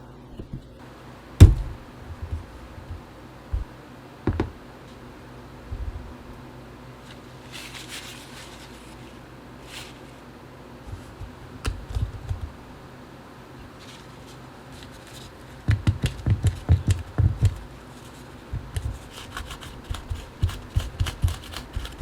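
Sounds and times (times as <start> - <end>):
soft taps: 1.4 - 3.7
rustling or scrubbing: 7.0 - 12.5.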